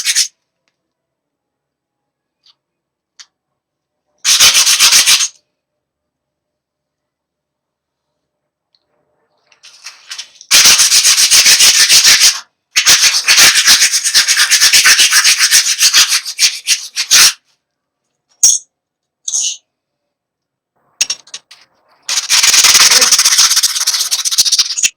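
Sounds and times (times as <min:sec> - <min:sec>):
hand sanding strokes on metal saw: 0:10.5 - 0:17.4.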